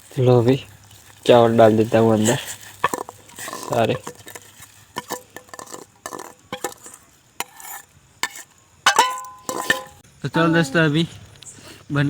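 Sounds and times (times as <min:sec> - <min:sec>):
metal spoon scraping a pot: 0:01.9 - 0:10.0
sharp ringing clang: 0:08.9 - 0:10.0.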